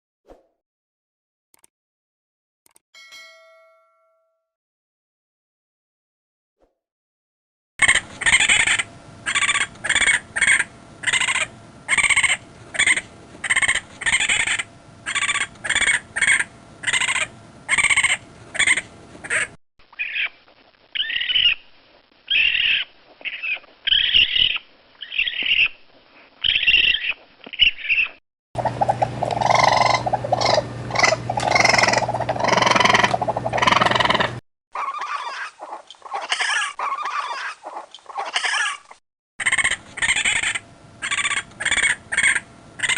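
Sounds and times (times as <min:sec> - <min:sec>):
low hum: 0:07.8 - 0:19.4, 0:28.6 - 0:34.4
raccoon chittering calls: 0:07.8 - 0:21.6, 0:22.3 - 0:25.8, 0:26.4 - 0:42.9.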